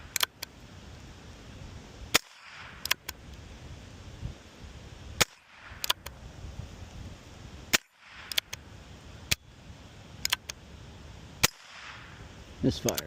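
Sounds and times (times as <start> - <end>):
metallic clicks: 0.0 - 0.5, 10.2 - 10.6, 12.8 - 13.0.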